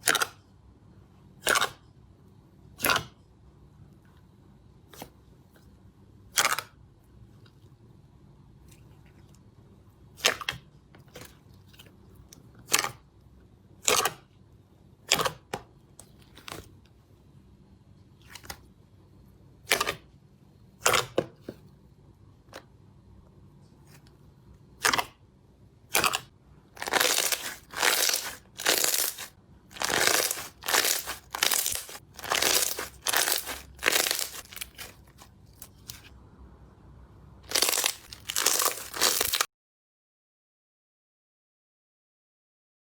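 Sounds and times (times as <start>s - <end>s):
slime squelching: 24.7s - 25.2s, 25.8s - 36.1s, 37.4s - 39.5s
slime popping: 26.8s - 35.0s, 37.5s - 39.5s.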